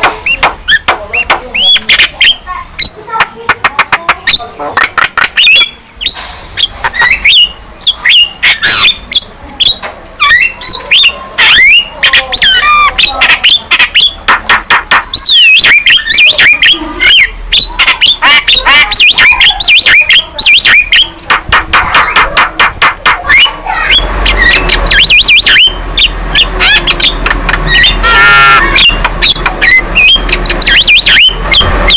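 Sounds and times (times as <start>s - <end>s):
myna whistles squawks and clicks: 24.3s - 31.6s.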